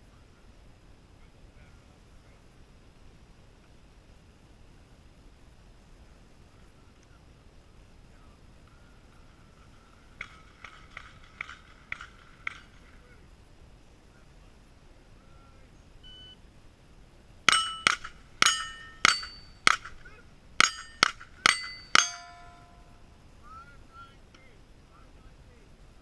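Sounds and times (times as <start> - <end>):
rifle shots on steel targets: 10.2 - 12.9, 17.5 - 20.0, 20.6 - 22.9
metallic target pings: 17.5 - 20.0, 20.6 - 23.0.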